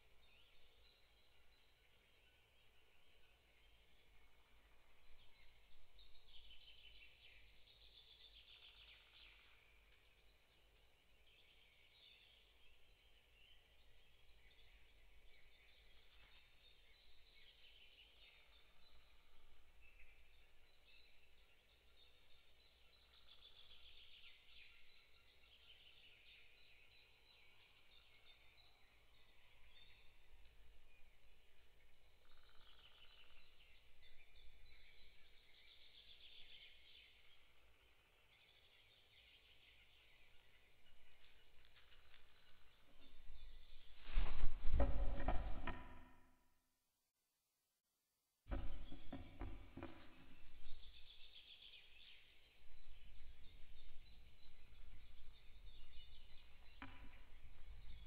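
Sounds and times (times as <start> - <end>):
faint birdsong: 0.0 - 46.4, 48.5 - 58.0
wind rumble on microphone: 42.8 - 46.0, 52.5 - 58.0
wind on microphone: 43.3 - 45.7
birds chirping: 48.5 - 58.0.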